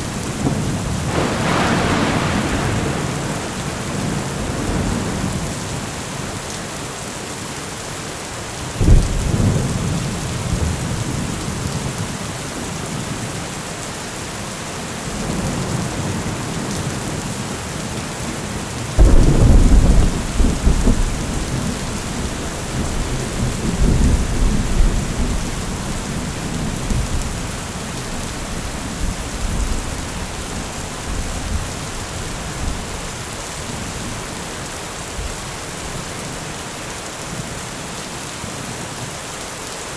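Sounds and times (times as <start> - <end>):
steady rain hissing: 0.0 - 39.9
thunder rolls: 0.1 - 6.0, 19.0 - 33.1.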